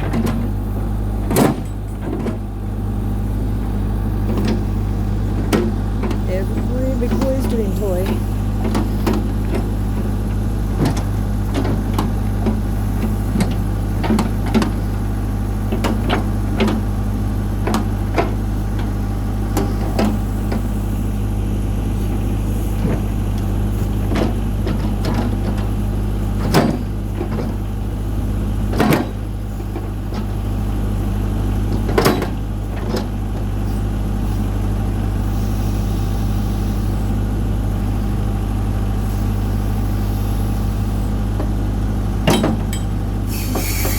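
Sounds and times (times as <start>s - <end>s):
heavy clunks: 0.0s - 2.5s, 41.3s - 43.9s
backhoe diesel engine running: 0.0s - 43.9s.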